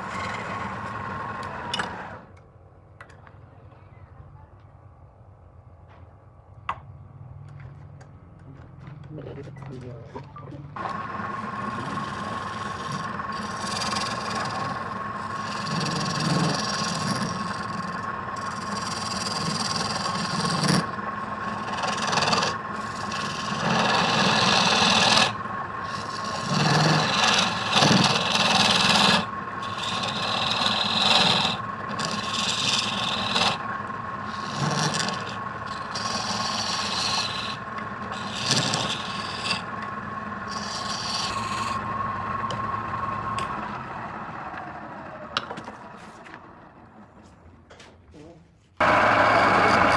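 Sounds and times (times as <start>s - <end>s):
hand tool scraping spinning wood: 0.0s - 2.3s, 10.8s - 42.7s, 48.8s - 49.9s
wood lathe whining: 0.0s - 2.4s, 10.8s - 46.7s, 48.8s - 49.9s.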